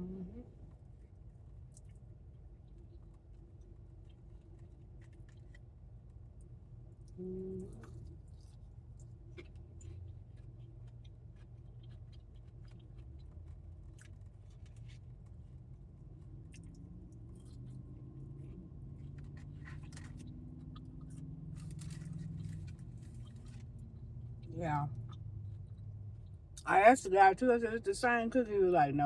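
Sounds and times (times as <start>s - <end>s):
low steady hum: 0.0s - 29.0s
person chewing crunchy food: 0.9s - 6.4s, 7.7s - 26.4s.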